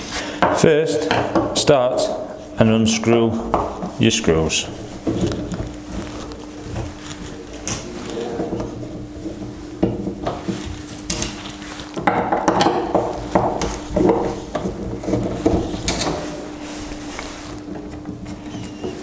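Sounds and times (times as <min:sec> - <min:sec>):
screwdriver clicking and scraping: 0:15.6 - 0:17.3.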